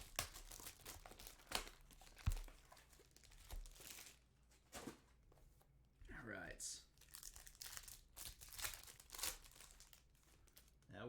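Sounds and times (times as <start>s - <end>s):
foil wrappers crinkling and tearing: 0.0s - 4.2s, 6.9s - 10.9s.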